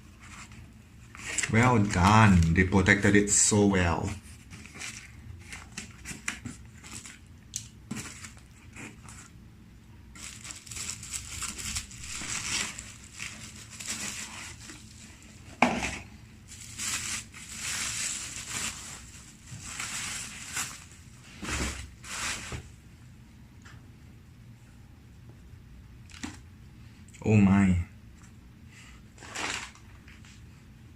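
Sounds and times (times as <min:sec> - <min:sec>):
packaging crinkling and rustling: 0:00.3 - 0:09.3, 0:10.1 - 0:15.6, 0:16.4 - 0:22.7, 0:29.2 - 0:30.4.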